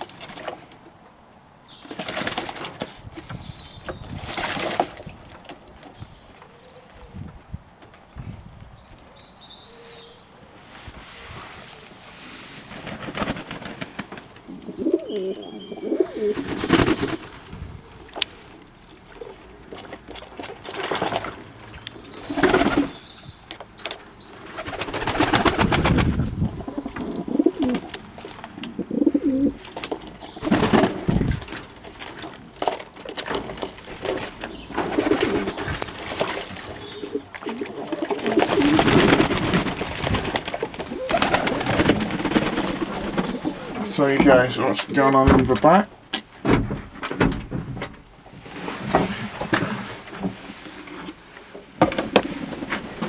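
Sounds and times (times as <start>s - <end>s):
pigeons cooing: 12.8s - 23.4s, 24.2s - 44.8s.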